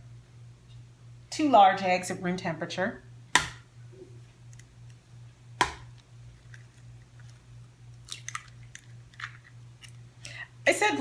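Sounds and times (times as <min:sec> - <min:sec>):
egg tapped on bowl edge: 0:03.4 - 0:03.6, 0:05.6 - 0:05.9.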